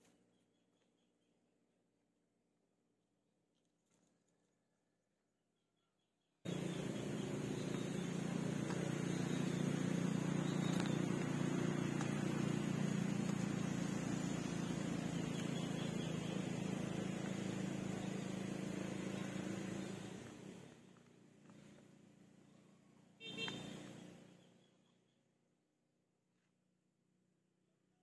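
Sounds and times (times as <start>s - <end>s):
small engine running: 6.5s - 24.7s.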